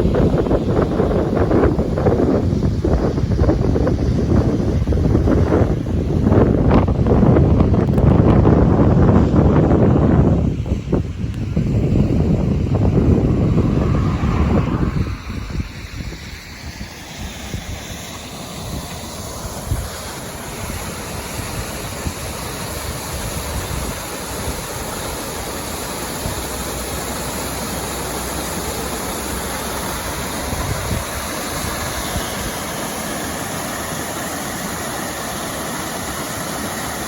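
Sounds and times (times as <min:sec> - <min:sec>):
waterfall rushing: 0:11.6 - 0:37.0.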